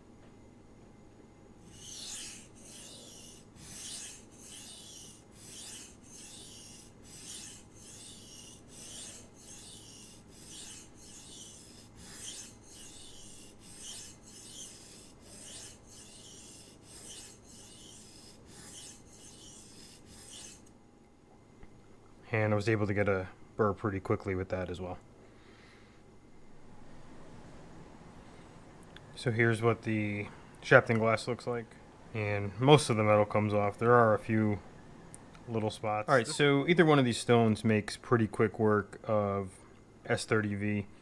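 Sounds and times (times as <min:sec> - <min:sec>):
knife rasping on whetstone: 0:01.6 - 0:20.7.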